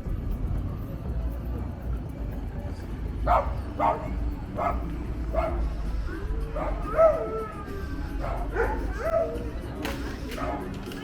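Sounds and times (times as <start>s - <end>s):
low rumble: 0.0s - 9.6s
dog barking: 3.3s - 5.7s, 8.2s - 9.4s
dog yelping: 6.5s - 9.4s.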